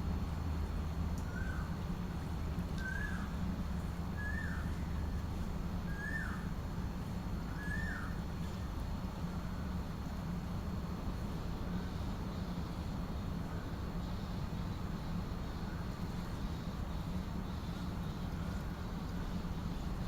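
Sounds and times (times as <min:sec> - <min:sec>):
bird whistled call: 0:02.8 - 0:03.3, 0:04.2 - 0:04.7, 0:05.9 - 0:06.4, 0:07.6 - 0:08.1.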